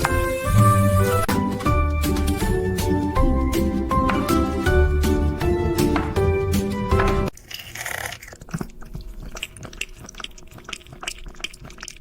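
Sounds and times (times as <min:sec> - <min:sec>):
background music: 0:00.0 - 0:07.3
crunching and chewing crisp food: 0:07.3 - 0:12.0.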